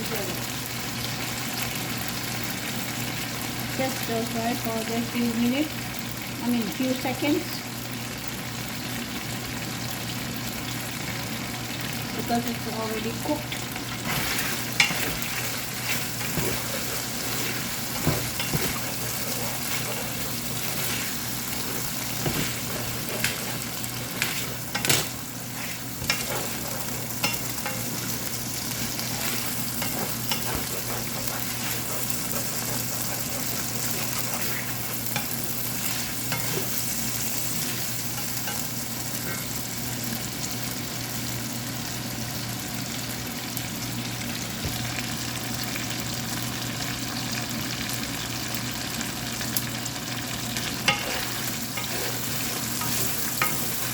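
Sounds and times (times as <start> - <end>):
food sizzling in hot oil: 0.0 - 53.9
utensil knocking and scraping pan: 14.1 - 36.9.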